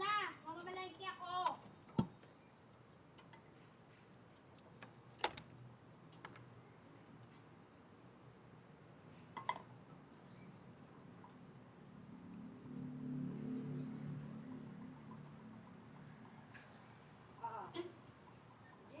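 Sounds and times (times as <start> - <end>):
small hard objects clinking: 0.6 - 2.1.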